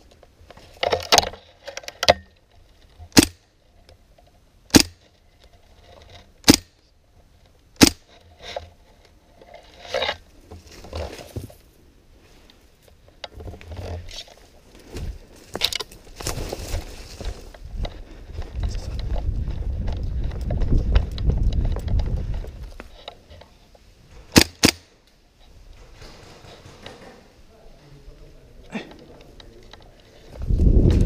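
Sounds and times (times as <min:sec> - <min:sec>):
airsoft gun shots: 0:04.7 - 0:05.0, 0:06.4 - 0:06.7, 0:07.8 - 0:08.0, 0:24.3 - 0:24.9
scraping and shuffling movement: 0:08.1 - 0:24.3, 0:25.4 - 0:31.0.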